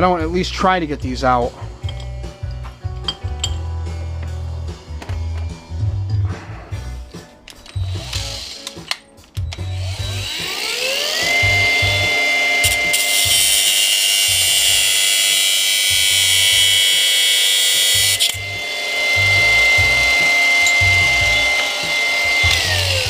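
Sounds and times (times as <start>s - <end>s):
background music with bass beat: 0.0s - 8.4s
power tool whining: 7.5s - 23.0s
tool cutting metal with harsh hiss: 7.8s - 9.0s, 9.7s - 23.0s.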